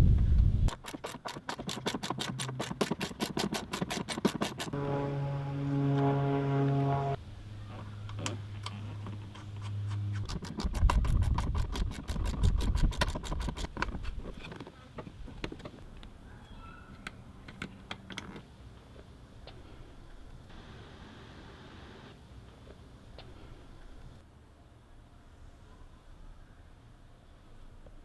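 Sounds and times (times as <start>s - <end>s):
low steady hum: 4.7s - 10.3s.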